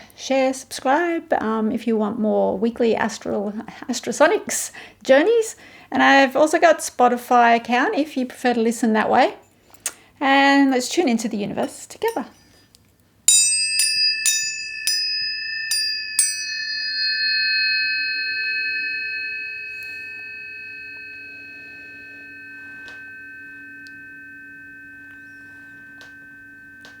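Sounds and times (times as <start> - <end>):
pure tones ringing: 13.3 - 27.0
tuning forks struck: 13.3 - 27.0.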